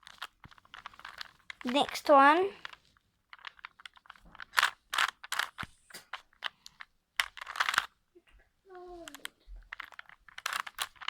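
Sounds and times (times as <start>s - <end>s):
puzzle cube clicking: 0.0s - 7.9s, 9.0s - 11.0s.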